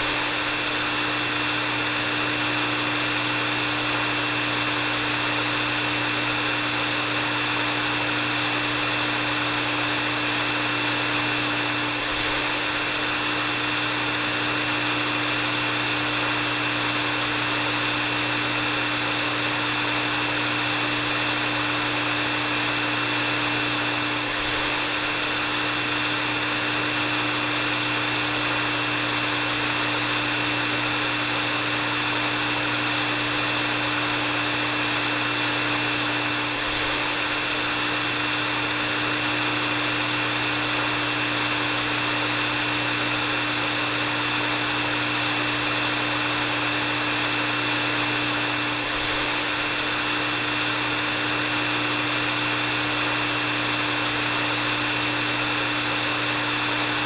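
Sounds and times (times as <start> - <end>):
hair dryer running: 0.0 - 57.0.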